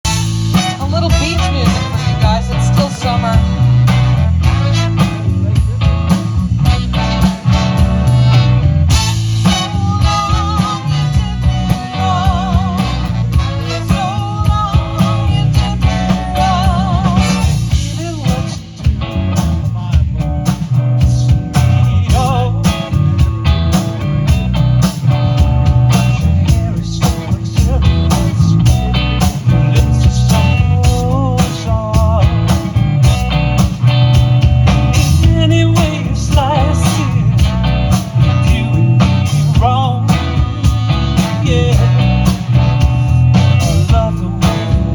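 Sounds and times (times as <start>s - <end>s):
drums and bass beat: 0.0s - 44.9s
guitar: 0.0s - 44.9s.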